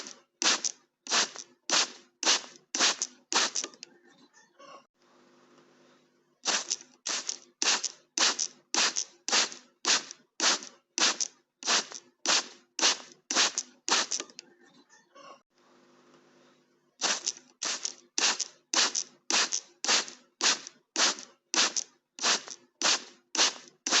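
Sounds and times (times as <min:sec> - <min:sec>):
spray bottle squirting: 0:00.0 - 0:03.8, 0:06.4 - 0:14.3, 0:17.0 - 0:24.0.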